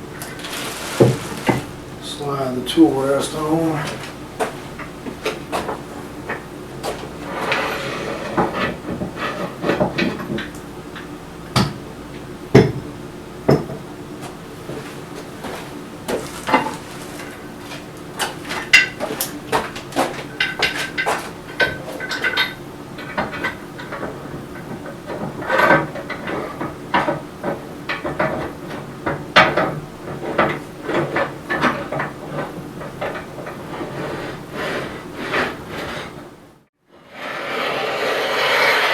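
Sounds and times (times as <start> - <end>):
metal parts clanking and scraping: 0.2 - 1.7.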